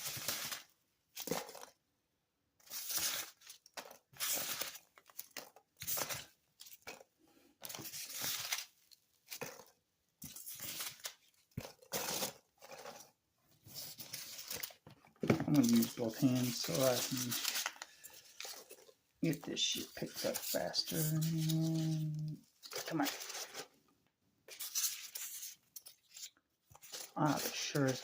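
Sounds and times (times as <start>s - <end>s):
foam packing peanuts rustling: 0.0s - 1.7s, 2.6s - 7.0s, 13.8s - 23.7s, 24.5s - 28.0s.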